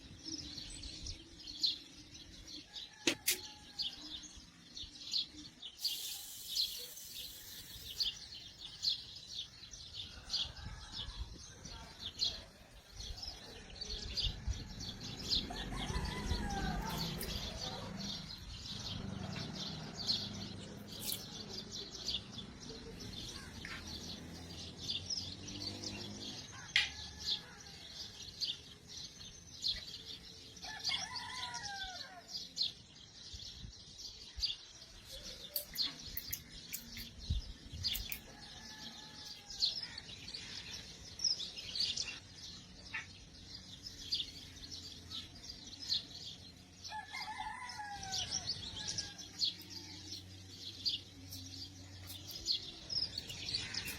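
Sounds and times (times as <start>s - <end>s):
small birds chirping: 0.0s - 53.9s.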